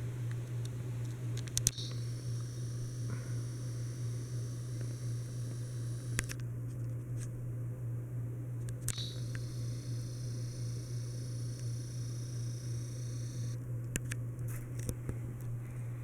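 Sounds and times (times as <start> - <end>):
ceiling fan motor hum: 0.0 - 16.0
high-pitched whine: 1.6 - 6.2, 8.9 - 13.6.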